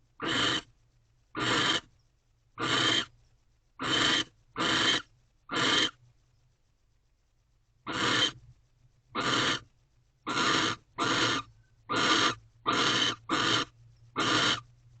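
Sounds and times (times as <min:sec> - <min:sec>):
faint low hum: 0:00.0 - 0:15.0
owl hissing calls: 0:00.2 - 0:00.7, 0:01.3 - 0:01.9, 0:02.6 - 0:03.1, 0:03.8 - 0:06.0, 0:07.8 - 0:08.4, 0:09.1 - 0:14.7.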